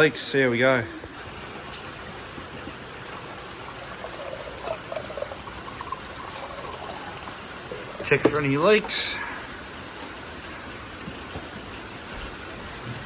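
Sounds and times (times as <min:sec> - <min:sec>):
water running into bottle: 0:01.6 - 0:09.6.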